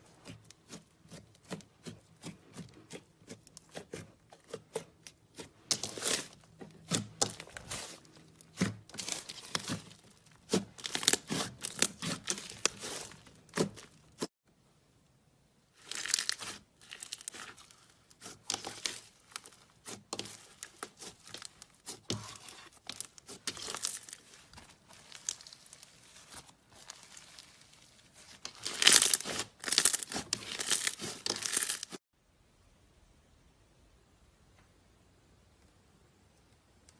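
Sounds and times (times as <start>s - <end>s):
slime crackling and popping: 15.8s - 32.0s.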